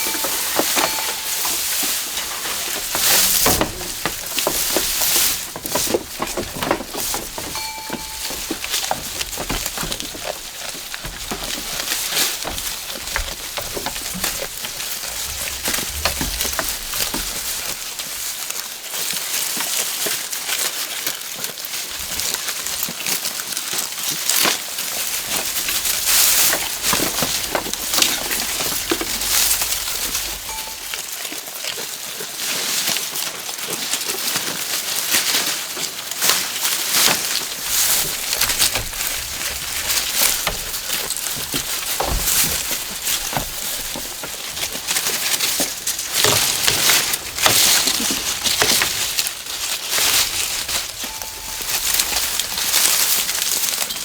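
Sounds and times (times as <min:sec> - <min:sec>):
rustling and crackling: 0:00.0 - 0:54.0.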